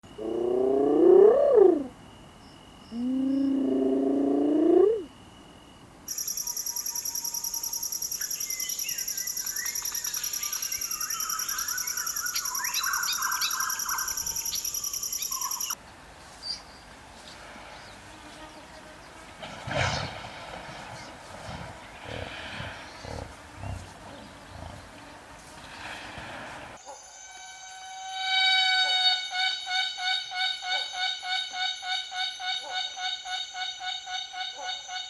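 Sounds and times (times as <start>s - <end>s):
wild animal calls rising and falling: 0.1s - 2.0s, 3.0s - 5.1s, 19.4s - 25.9s
bird chirps: 6.1s - 15.8s
fast-pulsing high buzz: 27.1s - 31.6s.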